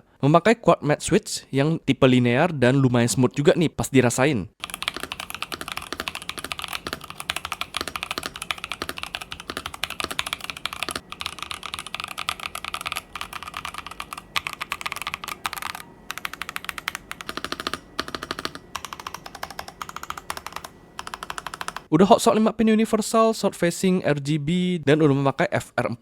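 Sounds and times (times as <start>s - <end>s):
mechanical keyboard typing clatter: 4.6s - 21.9s.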